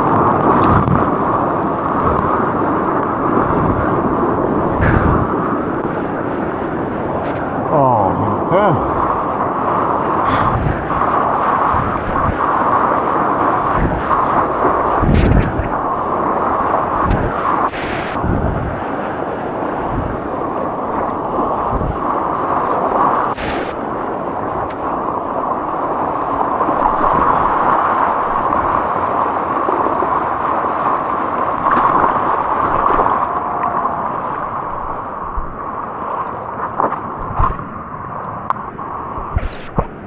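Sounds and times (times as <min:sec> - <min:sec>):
ocean surf roaring: 0:00.0 - 0:40.0
low thumps: 0:04.8 - 0:05.6.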